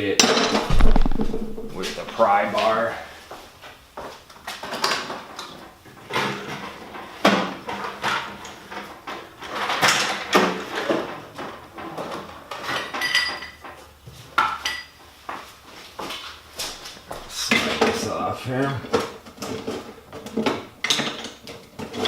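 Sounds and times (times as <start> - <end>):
hard metal strike: 0.6 - 2.3.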